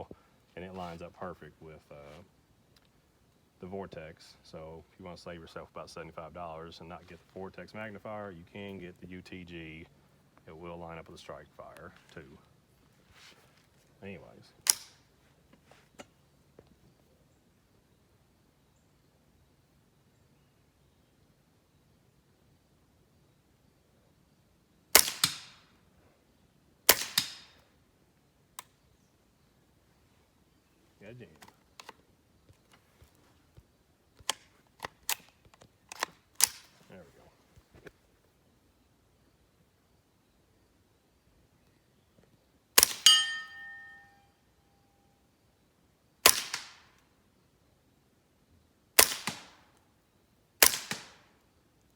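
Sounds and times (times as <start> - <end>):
sharp crack: 14.6 - 15.1, 25.0 - 25.8, 26.9 - 27.7, 34.2 - 37.0, 42.8 - 44.0, 46.2 - 47.0, 49.0 - 49.8, 50.6 - 51.3
rifle click: 14.7 - 15.0, 34.2 - 36.8
suppressed rifle shots: 24.9 - 25.7, 26.9 - 27.6, 42.8 - 44.0, 46.2 - 46.9, 49.0 - 49.7, 50.6 - 51.3
sharp metallic ring: 43.0 - 44.9.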